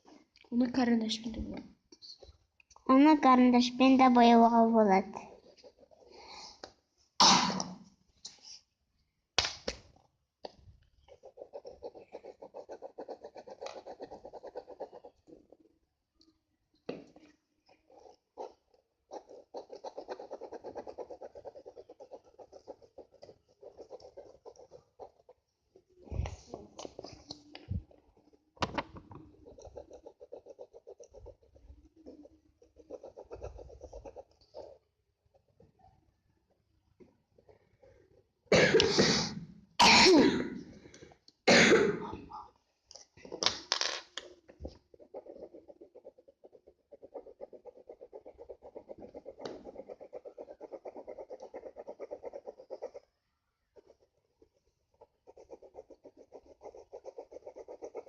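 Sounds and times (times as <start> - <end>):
pencil scribbling on paper: 2.2 - 6.8, 10.9 - 15.7, 17.4 - 28.5, 29.2 - 35.8, 44.2 - 58.0
person coughing: 7.2 - 7.8, 38.5 - 40.7, 41.5 - 42.4.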